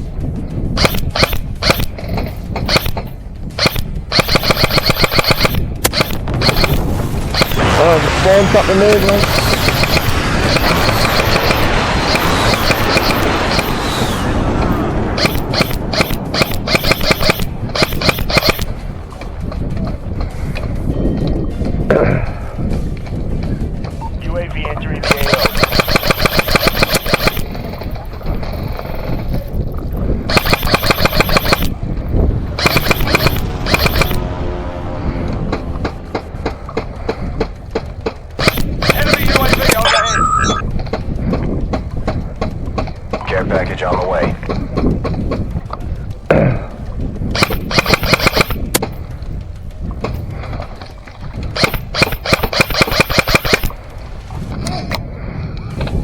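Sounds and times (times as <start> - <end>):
airsoft gun full-auto bursts: 0.8 - 18.8, 25.0 - 29.5, 30.3 - 31.8, 32.5 - 34.4, 38.3 - 40.1, 47.3 - 48.9, 51.6 - 53.8.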